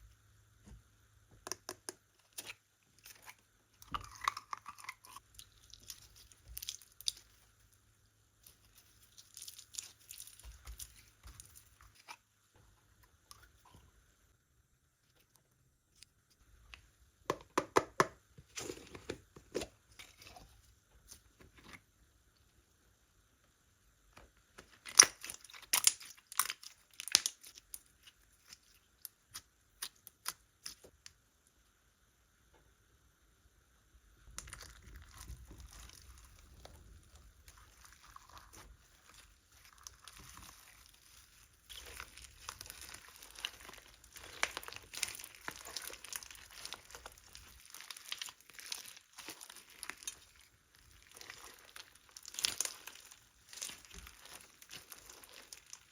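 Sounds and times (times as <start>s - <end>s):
slime crackling: 34.5s - 55.9s.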